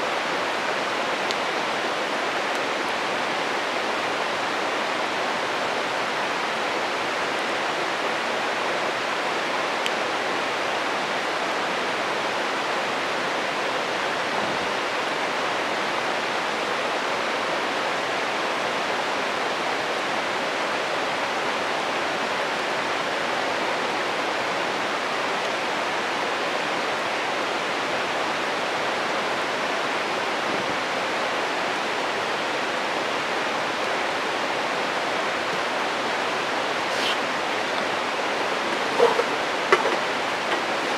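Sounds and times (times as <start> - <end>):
stream water rushing: 0.0 - 40.9
campfire snap: 36.8 - 37.8.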